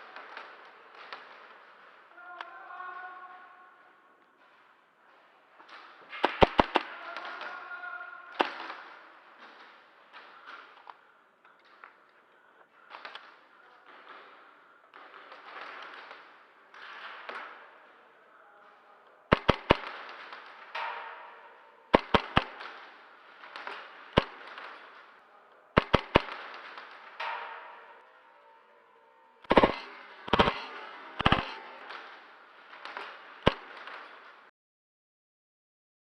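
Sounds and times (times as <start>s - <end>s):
airsoft guns firing: 5.7s - 11.1s, 19.3s - 25.2s, 25.8s - 28.2s, 29.4s - 34.5s.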